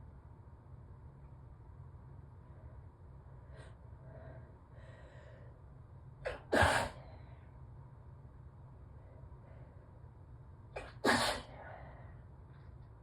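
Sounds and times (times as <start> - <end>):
soft breaths: 2.3 - 5.8, 11.5 - 12.9
person sneezing loudly: 6.3 - 7.0, 10.8 - 11.6.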